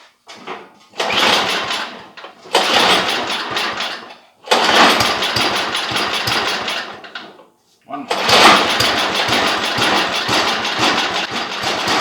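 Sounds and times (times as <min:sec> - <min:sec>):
recoil pull-starter cranking: 0:04.5 - 0:07.0, 0:08.1 - 0:12.0
engine chuffing: 0:04.6 - 0:07.0, 0:08.1 - 0:12.0.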